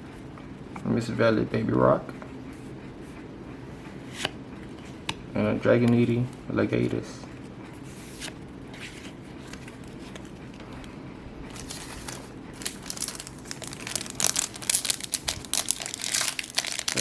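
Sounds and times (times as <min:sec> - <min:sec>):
foil wrapper crinkling: 0:11.5 - 0:17.0.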